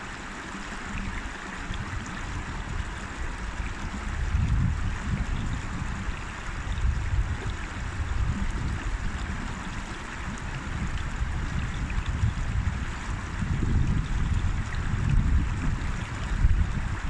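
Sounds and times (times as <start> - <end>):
river water rushing: 0.0 - 13.4.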